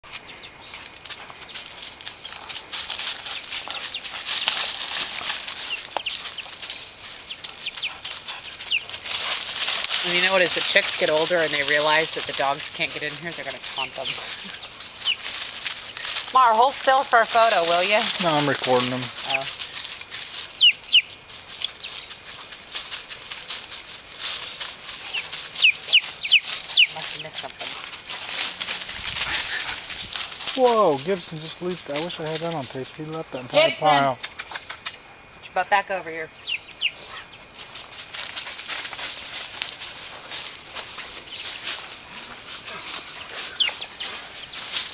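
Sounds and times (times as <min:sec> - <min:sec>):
rustling noise: 0:00.0 - 0:35.1, 0:36.7 - 0:44.9
chicks peeping: 0:00.1 - 0:22.2, 0:24.4 - 0:34.9, 0:36.3 - 0:37.6, 0:40.9 - 0:44.9
steady hiss: 0:00.2 - 0:35.5.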